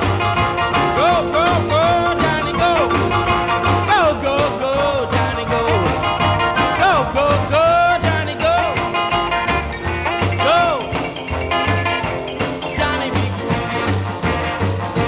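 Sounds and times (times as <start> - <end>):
sliding-note melody: 0.0 - 4.4
song with bass beat: 0.0 - 15.0.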